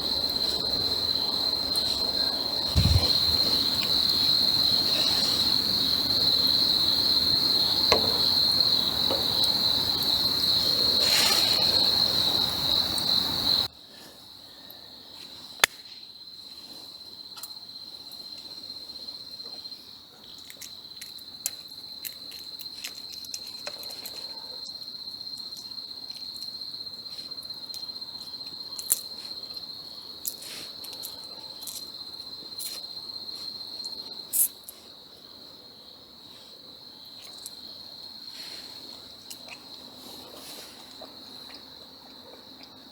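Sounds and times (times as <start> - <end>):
campfire crackling: 0.0 - 13.7
crickets trilling: 0.0 - 42.9.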